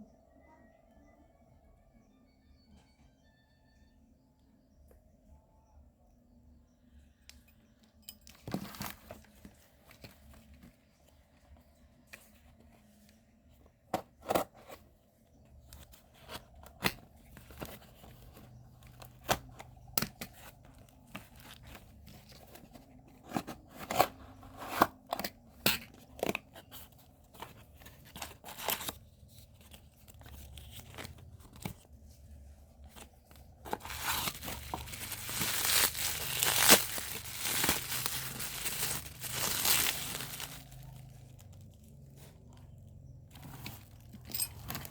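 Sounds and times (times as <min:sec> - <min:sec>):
packaging tearing and crinkling: 0:33.7 - 0:41.5.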